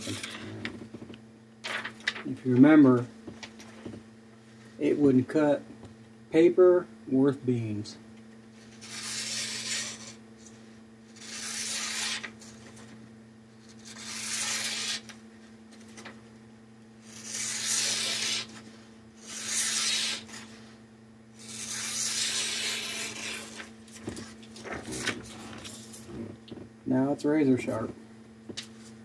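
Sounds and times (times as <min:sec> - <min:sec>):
steady low hum: 0:00.0 - 0:29.0
knife slicing through paper: 0:08.7 - 0:10.2, 0:11.2 - 0:12.6, 0:13.7 - 0:15.2, 0:17.1 - 0:18.6, 0:19.2 - 0:20.5, 0:21.4 - 0:23.7.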